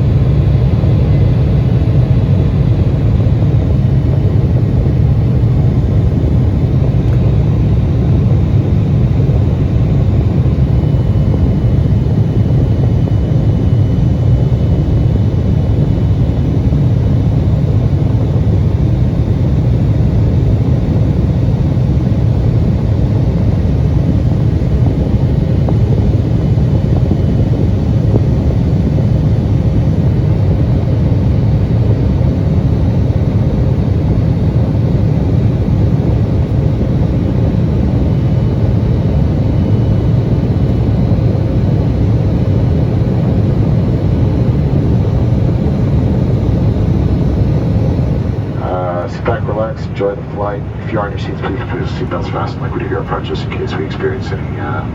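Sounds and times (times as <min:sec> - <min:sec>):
jet cabin roar: 0:00.0 - 0:54.9
faint steady tones: 0:47.9 - 0:54.9.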